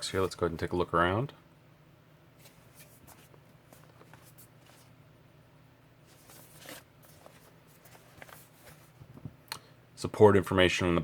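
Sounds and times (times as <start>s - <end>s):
cardboard box being handled: 6.1s - 9.2s.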